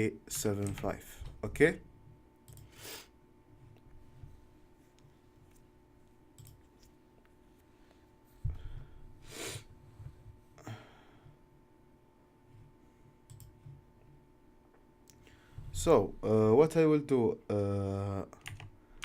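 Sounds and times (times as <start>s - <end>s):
faint electrical hum: 0.0s - 19.0s
computer mouse clicks: 2.5s - 2.8s, 6.4s - 6.9s, 13.2s - 13.8s.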